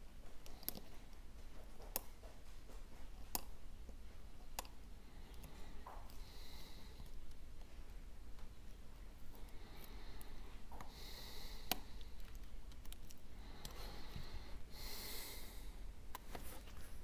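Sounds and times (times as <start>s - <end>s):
steady low hum: 0.0s - 17.0s
person breathing out through nose: 9.5s - 12.2s, 13.4s - 15.8s.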